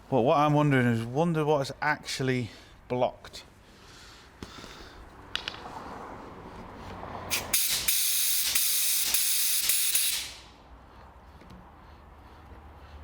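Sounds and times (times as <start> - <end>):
compressed air blast hissing: 7.3 - 10.6.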